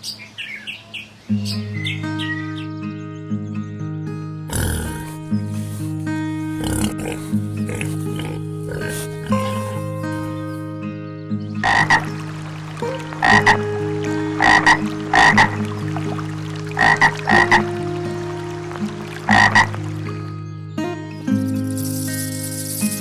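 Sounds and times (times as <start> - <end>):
frog croaking: 6.6 - 9.0, 11.6 - 20.2.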